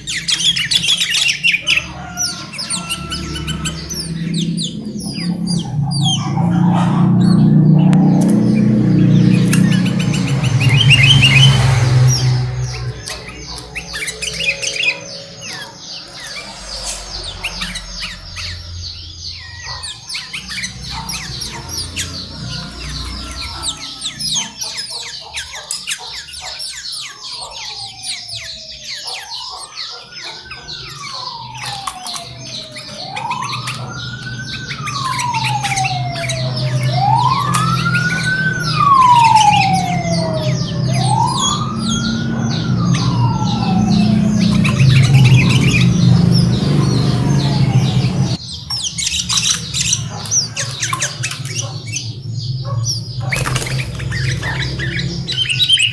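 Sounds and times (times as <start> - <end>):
birds chirping rapidly: 0.0 - 55.9
siren wailing: 0.0 - 55.9
loud low rumble: 1.8 - 24.4, 40.1 - 48.4.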